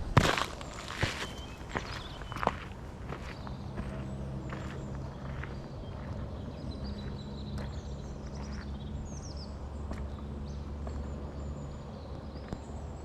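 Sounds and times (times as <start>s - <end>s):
footsteps on rocky path: 0.0s - 8.8s
bird chirping: 0.0s - 13.0s.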